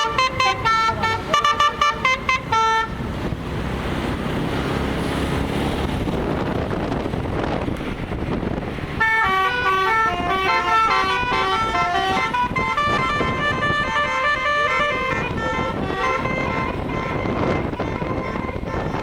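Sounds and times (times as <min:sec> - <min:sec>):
musical bus horn melody: 0:00.0 - 0:03.4, 0:09.0 - 0:19.0.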